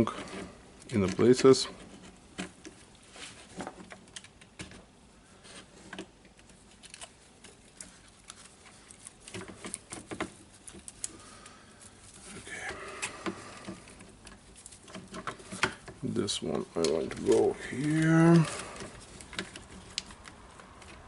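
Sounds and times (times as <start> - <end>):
scraping rustle: 0.0 - 21.0
plastic parts clicking and tapping: 16.6 - 21.0.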